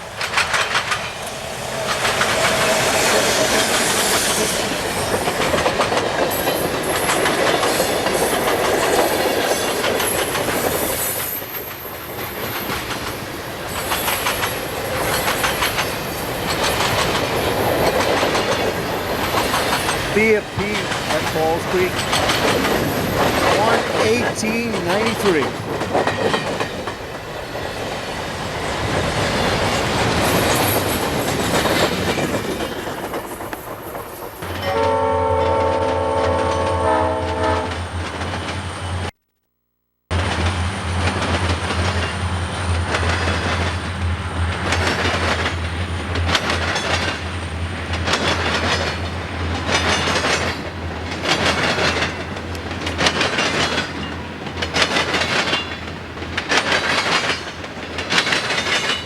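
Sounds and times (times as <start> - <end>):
locomotive air horn chord: 34.7 - 37.8
train wheel noise: 40.4 - 59.0
wheels clicking over rail joints: 47.9 - 59.0.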